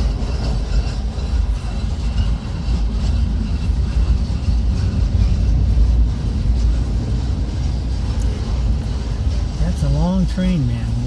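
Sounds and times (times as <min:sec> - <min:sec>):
freight train cars rolling past: 0:00.0 - 0:11.0.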